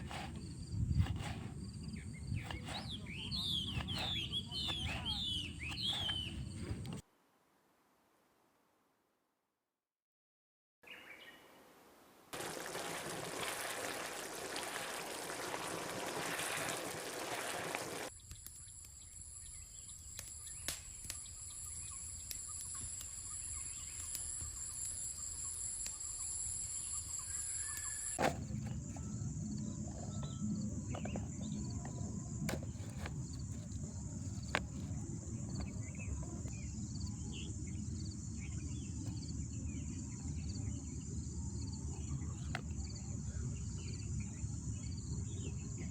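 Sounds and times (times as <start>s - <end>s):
insects chirring: 18.1s - 45.9s.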